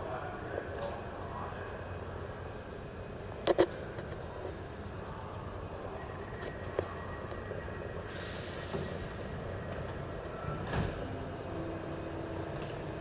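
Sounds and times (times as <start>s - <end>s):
train low rumble: 0.0s - 13.0s
brief hiss: 8.1s - 9.2s.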